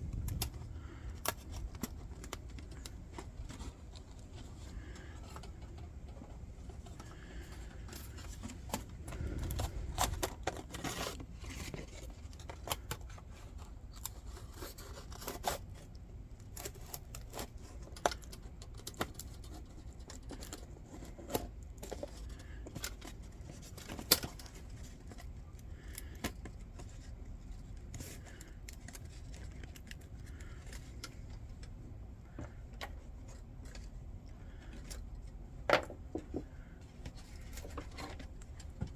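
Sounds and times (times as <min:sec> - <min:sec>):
mica rustling: 0:00.0 - 0:38.9.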